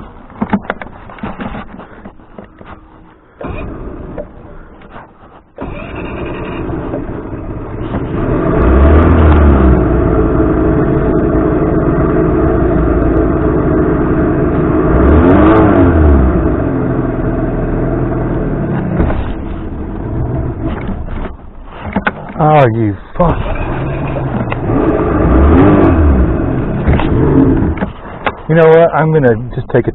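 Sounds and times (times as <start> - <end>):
outboard motor revving: 3.4 - 4.7, 5.6 - 21.4, 22.2 - 28.2.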